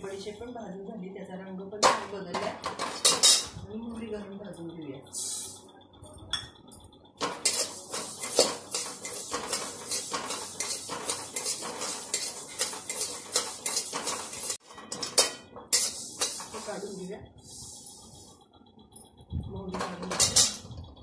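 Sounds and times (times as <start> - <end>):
spatula scraping mustard seeds: 7.3 - 14.6, 15.7 - 18.3.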